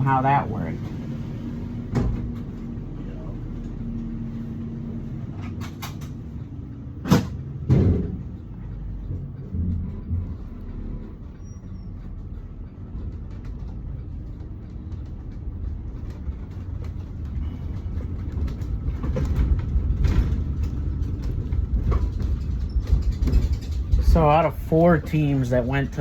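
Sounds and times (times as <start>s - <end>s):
bus engine and road rumble: 0.0s - 26.0s
knocks and rattles: 5.3s - 11.4s, 12.0s - 26.0s.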